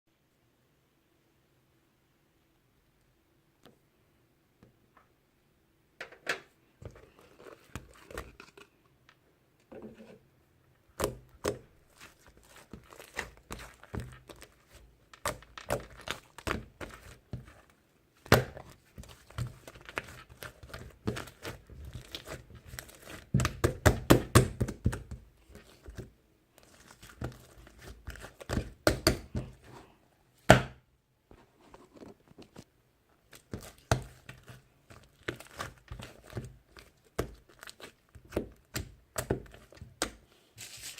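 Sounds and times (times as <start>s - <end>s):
crinkling and rustling: 6.8s - 10.2s, 11.4s - 23.6s, 31.3s - 40.9s.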